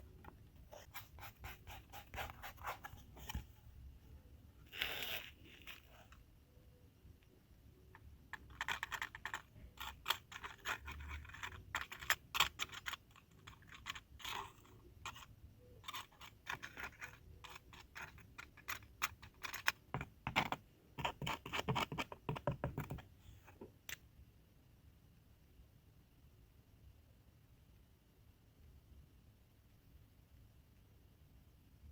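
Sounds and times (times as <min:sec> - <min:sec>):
clicks and scratches on hard plastic: 0:00.0 - 0:03.6, 0:07.2 - 0:24.0.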